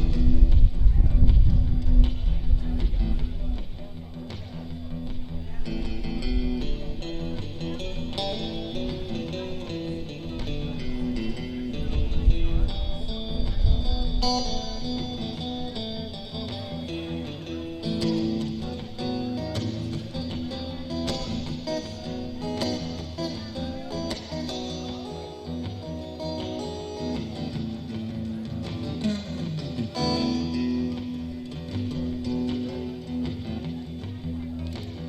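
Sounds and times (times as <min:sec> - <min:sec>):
electric guitar lead: 0:00.0 - 0:35.0
live band playing: 0:14.2 - 0:34.0.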